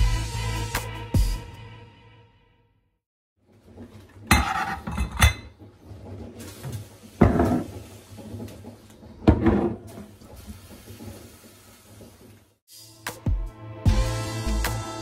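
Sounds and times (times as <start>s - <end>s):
dishes and cutlery clattering: 4.3s - 5.6s.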